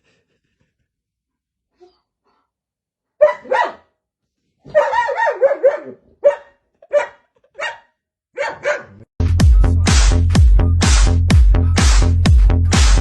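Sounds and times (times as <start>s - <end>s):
dog barking: 3.2s - 4.0s, 4.6s - 9.1s.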